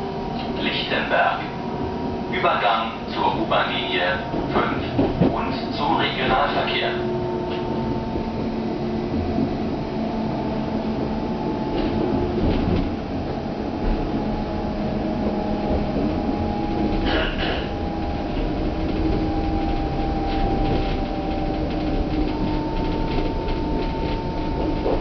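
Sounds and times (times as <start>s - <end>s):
electric train motor whine: 6.8s - 25.0s
wheels clicking over rail joints: 15.2s - 25.0s.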